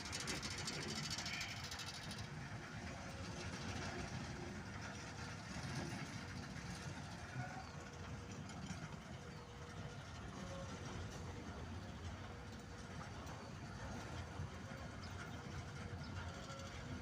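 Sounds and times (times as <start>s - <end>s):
heavy engine idling: 0.0s - 17.0s.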